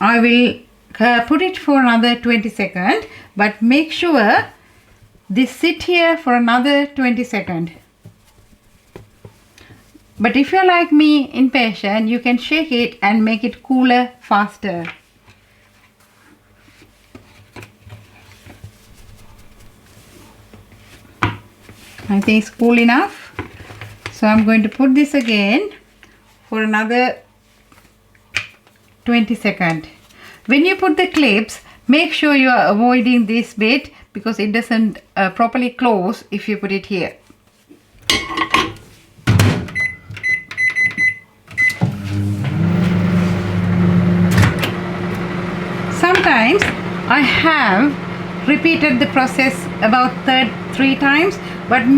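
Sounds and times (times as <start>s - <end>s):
microwave oven humming: 39.3s - 51.9s
microwave door shutting: 44.0s - 44.8s.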